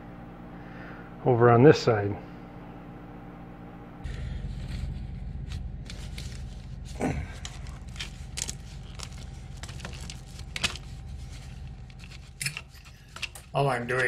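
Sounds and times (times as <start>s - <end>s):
steady low hum: 0.0s - 14.0s
clicks and scrapes of drain parts: 7.4s - 14.0s.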